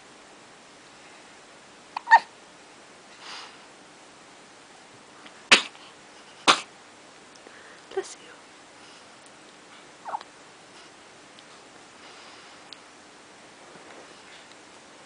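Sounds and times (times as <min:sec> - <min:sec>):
person hiccuping: 0:02.0 - 0:02.3.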